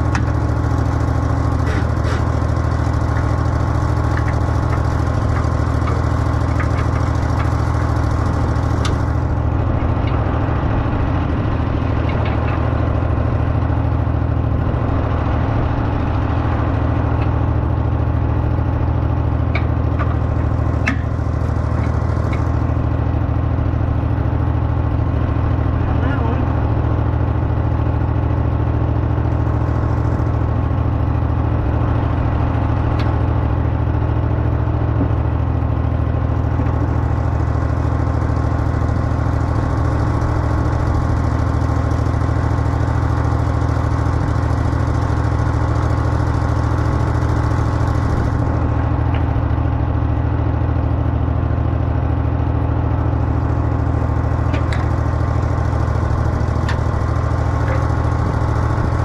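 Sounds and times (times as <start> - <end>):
skid steer engine running: 0.0 - 59.0.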